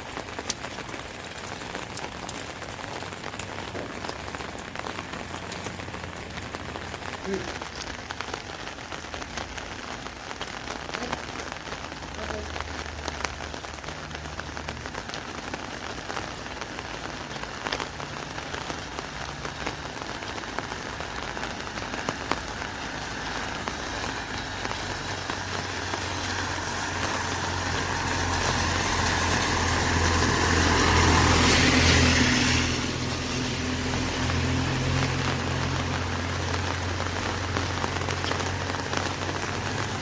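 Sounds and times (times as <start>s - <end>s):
rain pattering on an umbrella: 0.0s - 40.0s
vehicle passing with engine hum: 0.6s - 8.2s, 17.8s - 40.0s.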